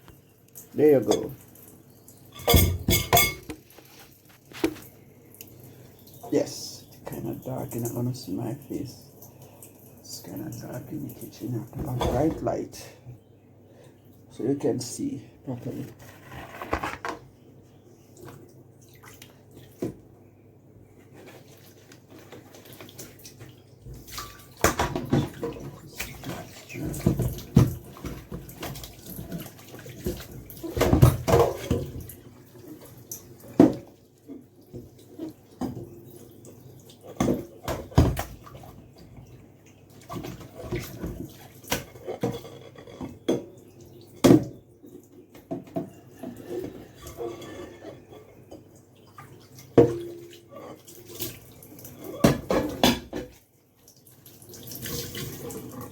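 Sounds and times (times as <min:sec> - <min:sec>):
dishes clinking: 0:02.3 - 0:03.6
water running and splashing: 0:21.1 - 0:43.0, 0:43.6 - 0:55.9.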